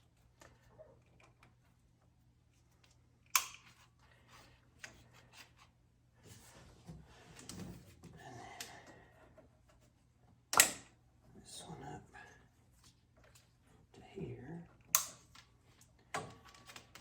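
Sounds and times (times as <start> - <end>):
sharp click: 10.5 - 10.9
small clicks and rustles: 14.7 - 17.0.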